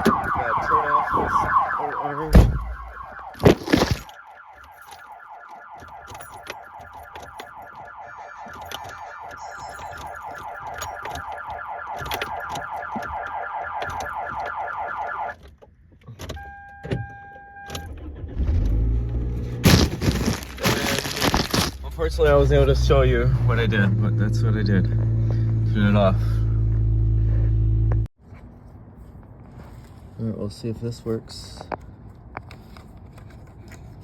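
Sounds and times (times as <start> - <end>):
car alarm warbling: 0.0 - 15.4, 16.4 - 18.5
steady beep: 8.1 - 10.3.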